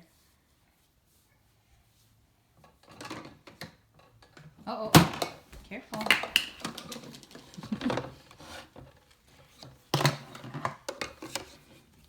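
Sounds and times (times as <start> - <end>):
plastic toy parts clattering: 5.0 - 11.8.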